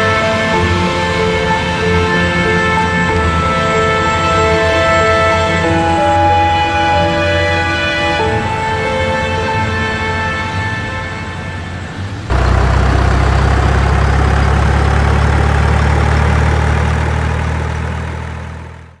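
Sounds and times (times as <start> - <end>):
background music: 0.0 - 12.4
heavy vehicle engine idling: 0.0 - 19.0.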